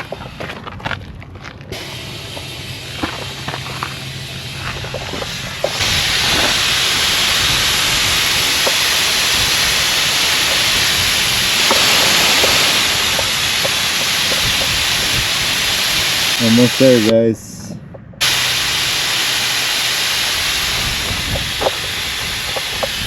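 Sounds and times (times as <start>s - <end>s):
air hissing out of tires: 0.0s - 0.6s, 1.7s - 17.2s, 18.2s - 23.0s.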